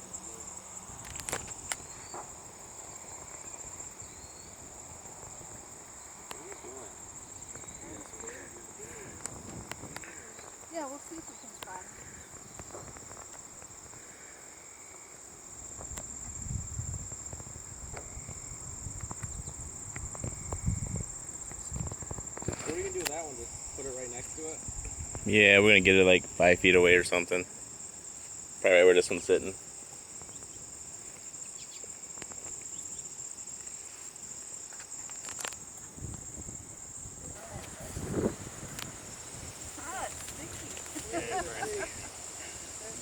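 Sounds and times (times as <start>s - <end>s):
high-pitched insect trill: 0.0s - 43.0s
high-pitched insect chirring: 34.8s - 43.0s.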